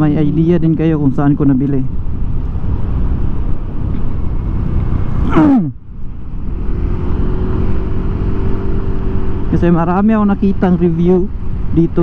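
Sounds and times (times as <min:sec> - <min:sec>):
wind rushing over microphone: 0:00.0 - 0:12.0
motorcycle engine: 0:02.0 - 0:10.0.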